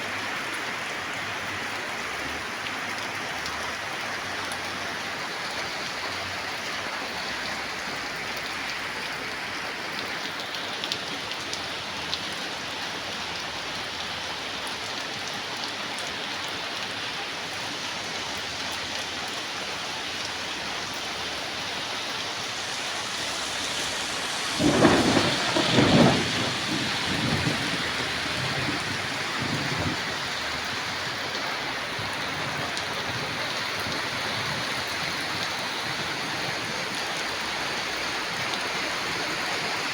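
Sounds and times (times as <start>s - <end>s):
heavy rain falling: 0.1s - 39.9s
thunder clap rolling: 22.0s - 31.0s.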